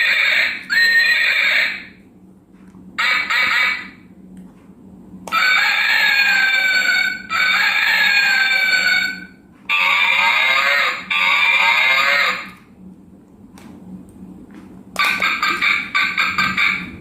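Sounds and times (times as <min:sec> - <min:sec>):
rooster crowing from toy speaker: 0:00.0 - 0:01.9, 0:05.3 - 0:12.5
hen clucking from toy speaker: 0:03.0 - 0:03.9, 0:15.0 - 0:16.9.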